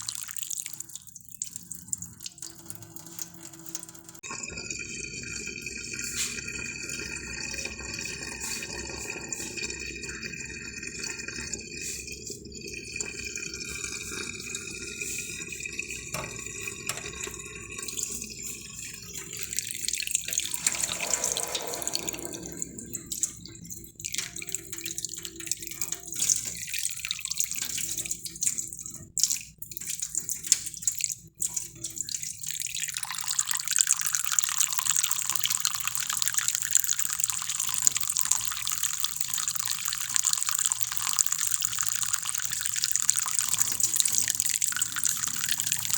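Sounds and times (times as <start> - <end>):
water running and dripping: 0.0 - 45.9
hiss of flowing water: 20.3 - 23.2, 41.8 - 45.9.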